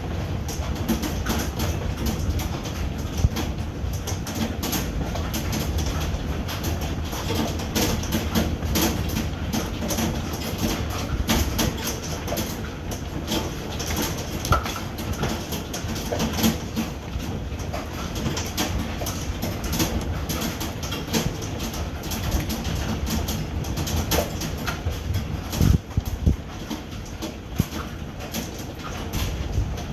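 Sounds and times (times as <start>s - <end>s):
hailstones pelting down: 0.0s - 29.9s
steady low rumble: 16.6s - 28.2s.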